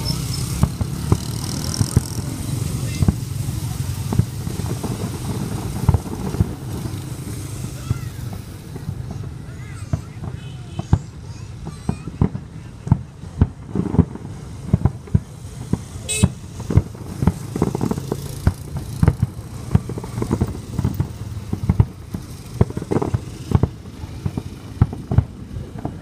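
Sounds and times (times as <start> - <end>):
crowd: 0.0 - 19.2
fireworks bursting: 0.0 - 26.0
low rumble of traffic: 0.0 - 26.0.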